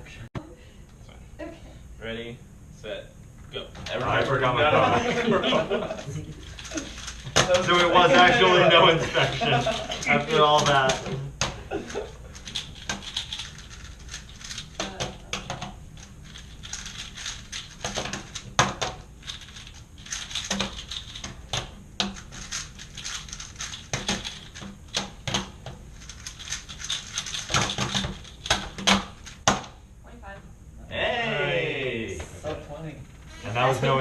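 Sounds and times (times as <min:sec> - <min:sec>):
puzzle cube plastic clicks: 0:06.4 - 0:07.9, 0:12.2 - 0:15.7, 0:16.3 - 0:29.7.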